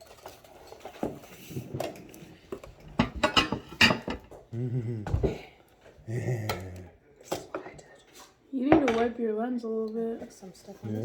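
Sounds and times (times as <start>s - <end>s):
cutlery and dishes clinking: 0.0s - 4.4s.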